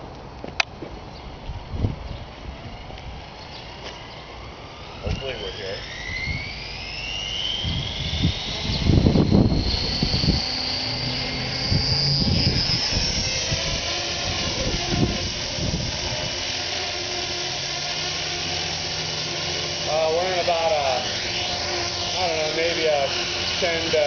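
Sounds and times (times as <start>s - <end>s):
model helicopter rotor whine: 0.9s - 24.0s
wind buffeting microphone: 1.3s - 3.4s, 7.6s - 16.6s.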